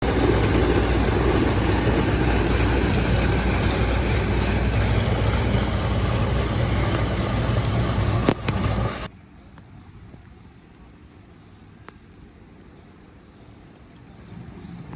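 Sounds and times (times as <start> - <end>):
engine-like running noise: 0.0 - 9.1
low hum: 0.0 - 9.2.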